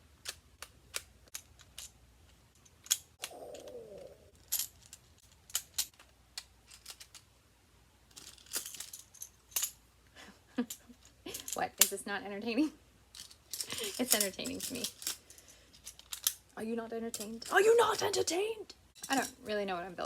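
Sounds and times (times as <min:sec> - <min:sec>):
plastic magnetic tiles clicking: 0:00.2 - 0:01.9.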